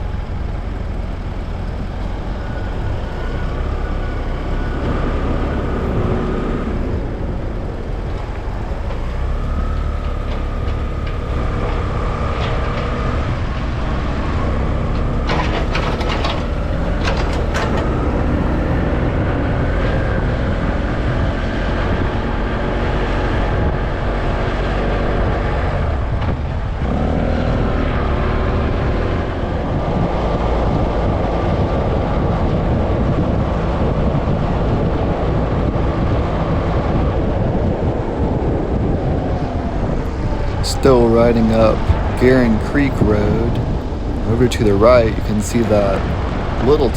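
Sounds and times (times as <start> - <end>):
road noise: 0.0 - 46.9
vehicle engine rumbling: 0.0 - 46.9
sharp clicks or rattles: 15.2 - 18.4.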